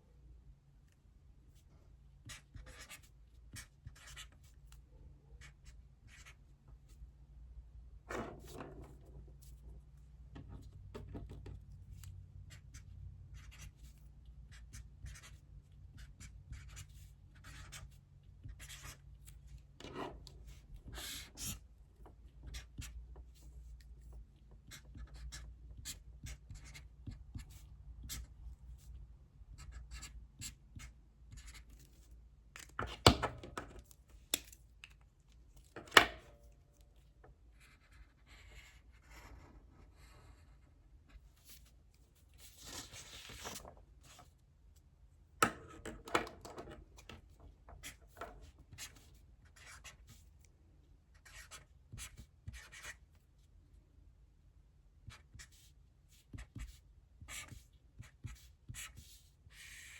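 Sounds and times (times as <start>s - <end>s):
handwriting on paper: 2.3s - 4.5s, 13.4s - 19.0s, 20.8s - 21.6s, 24.6s - 28.3s, 29.6s - 31.8s, 37.6s - 40.6s, 47.8s - 50.2s, 51.2s - 53.0s, 55.1s - 59.9s.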